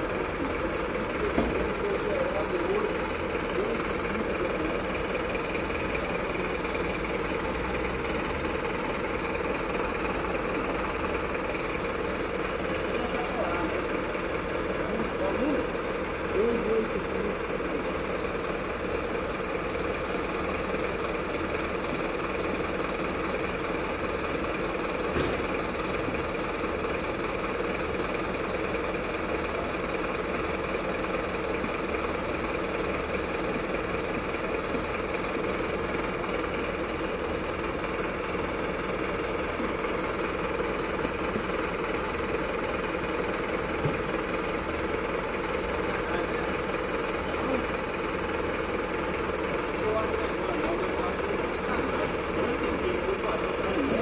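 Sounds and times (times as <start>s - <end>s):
truck engine idling: 0.0s - 54.0s.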